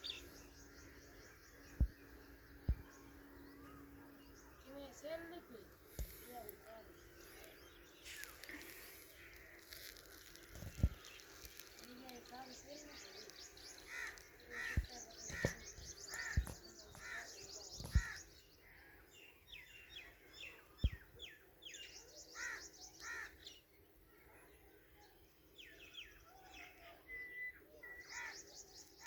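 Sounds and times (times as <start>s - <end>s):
bird chicks cheeping: 0.0s - 5.4s, 25.7s - 29.0s.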